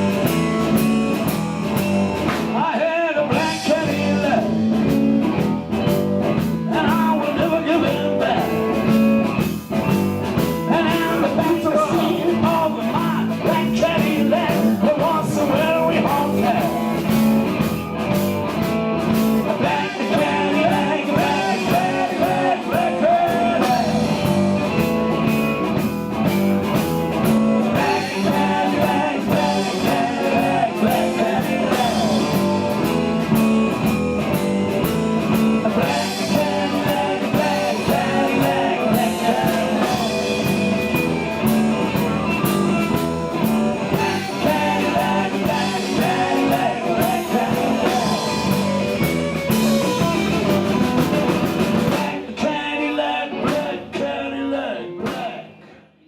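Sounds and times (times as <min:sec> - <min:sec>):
steady drum beat: 0:00.0 - 0:02.7, 0:03.3 - 0:52.4
blues-rock band playing: 0:00.0 - 0:52.4
electric guitar bending notes: 0:07.4 - 0:52.0.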